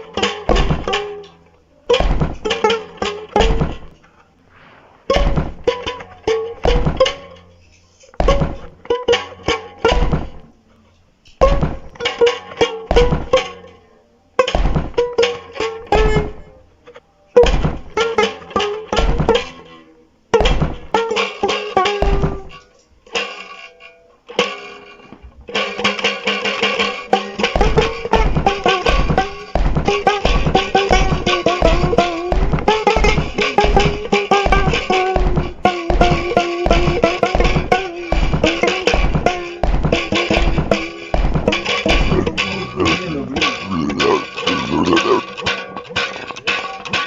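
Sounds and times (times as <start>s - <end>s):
drums and guitar hard strokes: 0.4s - 1.2s, 2.0s - 7.4s, 8.0s - 8.8s, 21.9s - 22.6s, 27.3s - 45.6s
band playing stop-start riff: 27.6s - 45.3s.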